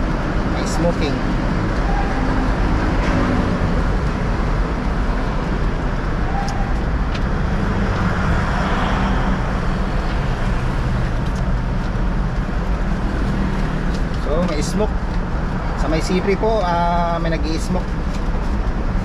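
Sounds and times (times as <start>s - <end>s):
road traffic: 0.0s - 19.0s.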